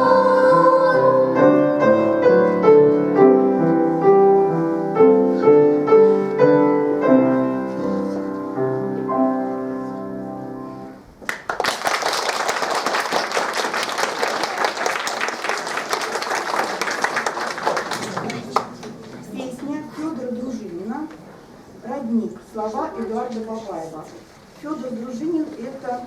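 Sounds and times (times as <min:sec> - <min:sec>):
piano playing: 0:00.0 - 0:11.1
audience applause: 0:11.3 - 0:19.1.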